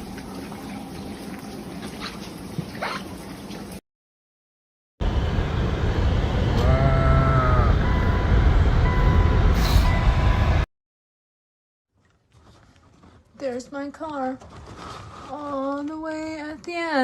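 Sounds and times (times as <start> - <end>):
short pitched tone: 6.6 - 10.6.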